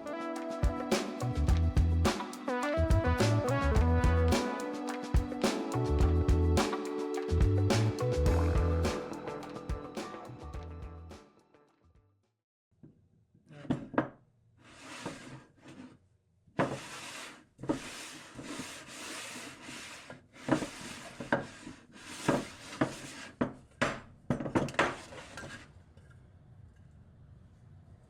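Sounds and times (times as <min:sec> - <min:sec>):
wood rubbing and scraping: 0:16.6 - 0:23.4.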